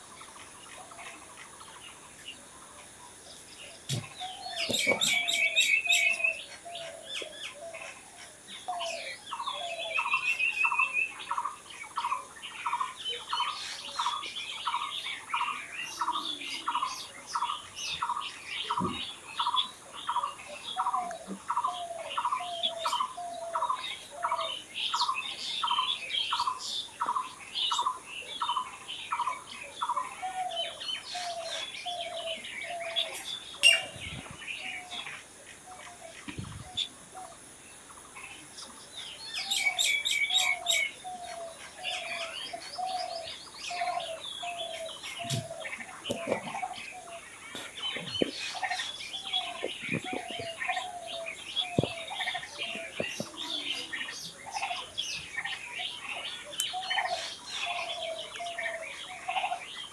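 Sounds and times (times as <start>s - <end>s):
birds trilling and chirping: 0.0s - 59.9s
bird repeating low note: 47.8s - 55.0s.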